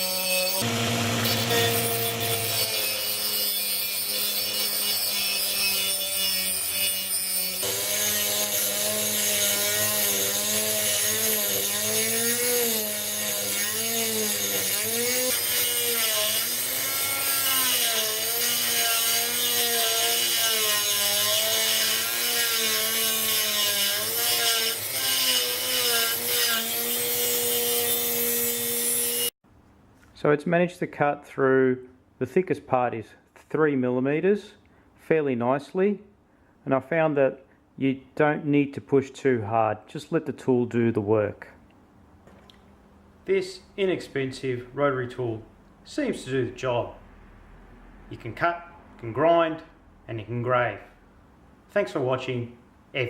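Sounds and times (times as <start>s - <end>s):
rotary tool grinding metal: 0.0s - 29.3s.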